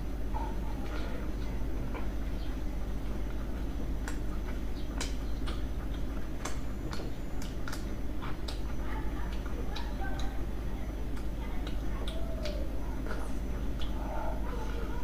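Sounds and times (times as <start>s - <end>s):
steady low hum: 0.0s - 15.0s
mouth clicks and smacks chewing: 0.3s - 15.0s.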